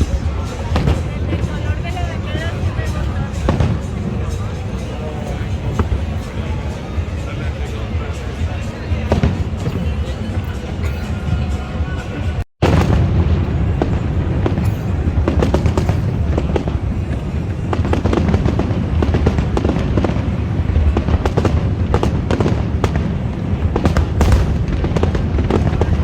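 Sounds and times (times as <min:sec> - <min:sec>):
fireworks bangs and crackles: 0:00.0 - 0:26.0.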